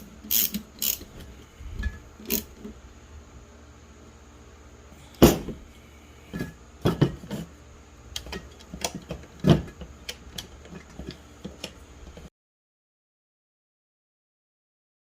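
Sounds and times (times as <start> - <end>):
metal parts clicking and knocking: 0.0 - 1.1.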